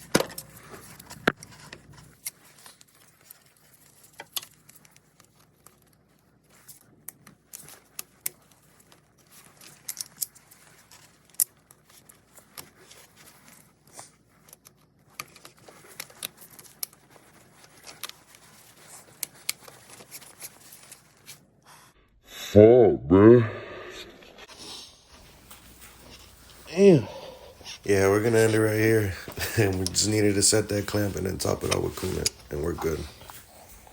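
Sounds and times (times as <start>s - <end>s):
light rustling: 25.2s - 33.9s.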